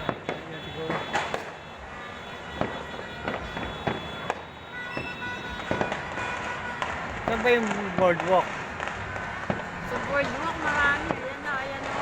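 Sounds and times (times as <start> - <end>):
fireworks and firecrackers banging: 0.0 - 12.0.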